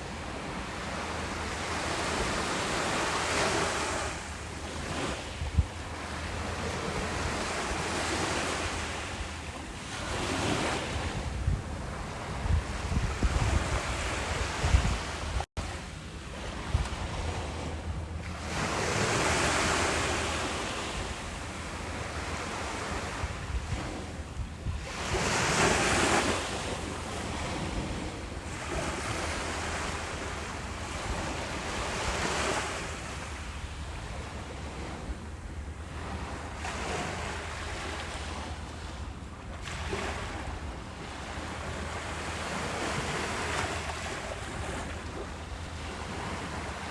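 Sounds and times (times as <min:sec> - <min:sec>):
ocean waves breaking on shore: 0:00.0 - 0:46.9
wind rumble on microphone: 0:00.0 - 0:46.9.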